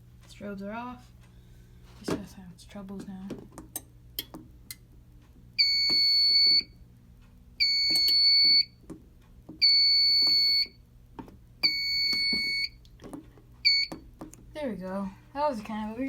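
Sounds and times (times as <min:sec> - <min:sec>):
fire alarm beeping: 0:05.6 - 0:06.8, 0:07.6 - 0:08.8, 0:09.6 - 0:10.8, 0:11.6 - 0:12.8, 0:13.6 - 0:14.0.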